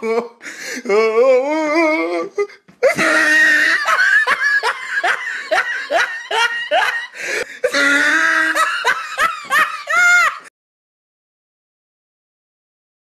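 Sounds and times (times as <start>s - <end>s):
loud laughter: 2.8s - 10.5s.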